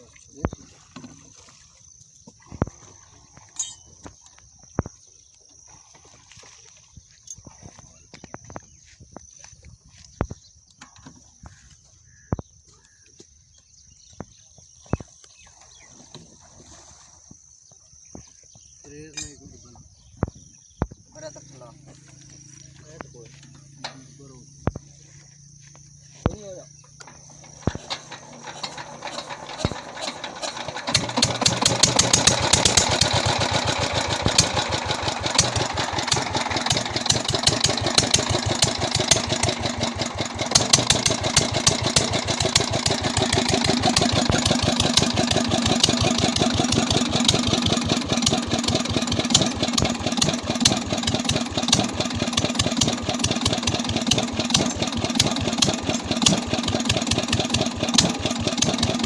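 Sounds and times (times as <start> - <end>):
diesel engine running: 27.0 - 59.0.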